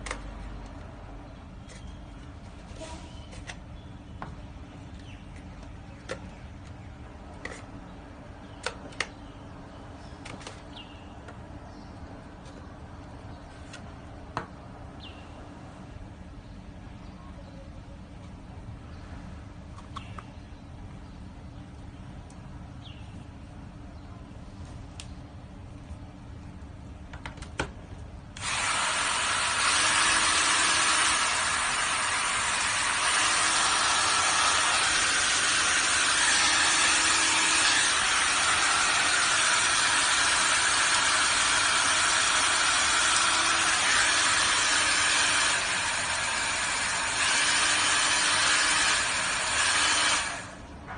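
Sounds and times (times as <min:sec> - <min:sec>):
hair dryer blowing air: 0:28.4 - 0:50.6.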